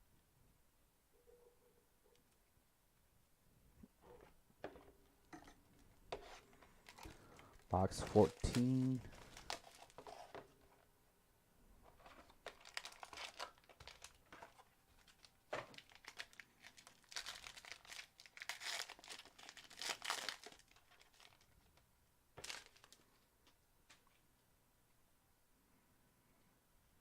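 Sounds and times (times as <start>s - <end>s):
plastic wrapping crinkling and tearing: 6.8s - 10.4s, 11.8s - 21.8s, 22.4s - 23.1s.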